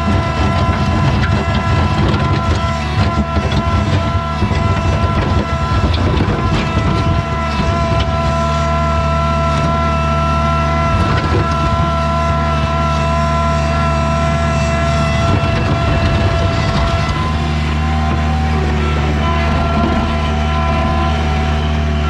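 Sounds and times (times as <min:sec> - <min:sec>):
skid steer engine drone: 0:00.0 - 0:22.0
steady high whine: 0:10.4 - 0:22.0.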